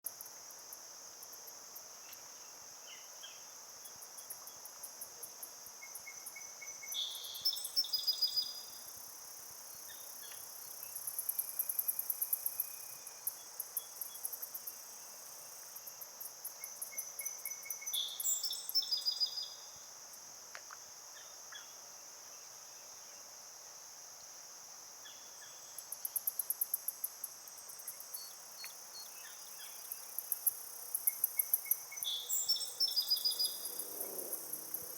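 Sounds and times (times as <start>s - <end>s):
crickets trilling: 2.4s - 19.8s, 25.0s - 34.9s
insects pulsing chorus: 26.2s - 34.9s.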